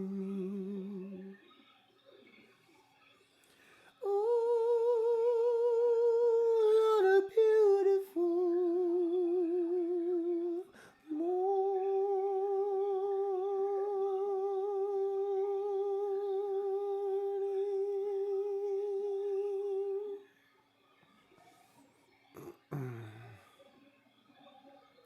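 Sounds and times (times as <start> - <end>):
man singing unaccompanied: 0.0 - 1.4, 4.0 - 20.2.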